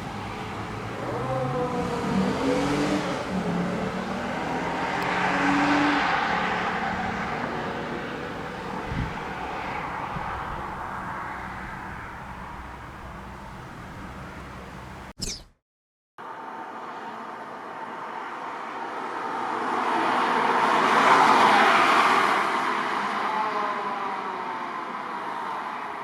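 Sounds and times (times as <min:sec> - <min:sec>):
car engine accelerating: 0:00.0 - 0:15.1.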